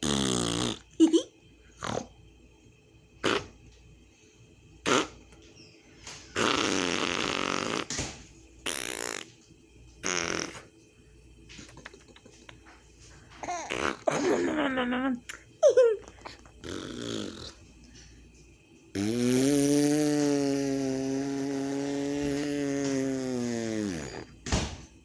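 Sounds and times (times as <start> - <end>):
woman blowing lip raspberries: 3.2 - 3.6, 4.8 - 5.4, 6.3 - 8.0, 8.6 - 9.4, 10.0 - 10.7, 13.4 - 14.4, 15.3 - 17.6, 18.9 - 24.4
squeaky vocal sounds: 6.4 - 7.9, 8.6 - 9.3, 10.0 - 10.6, 13.4 - 14.5, 16.0 - 17.6, 19.0 - 24.3.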